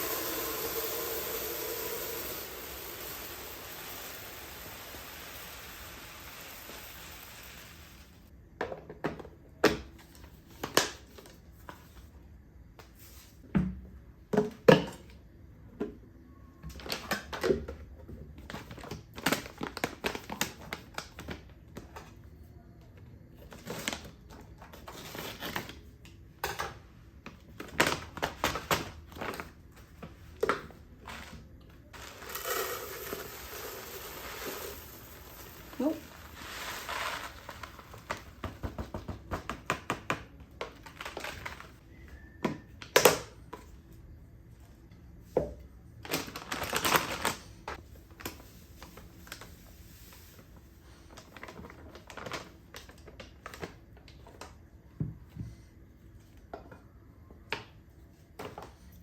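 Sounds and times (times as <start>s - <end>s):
steady hiss: 0.0s - 8.3s.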